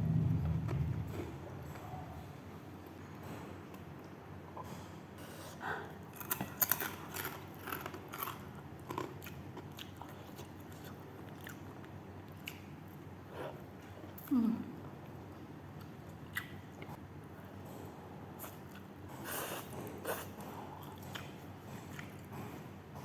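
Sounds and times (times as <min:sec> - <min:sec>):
person chewing food: 0:05.9 - 0:14.0, 0:18.4 - 0:22.7.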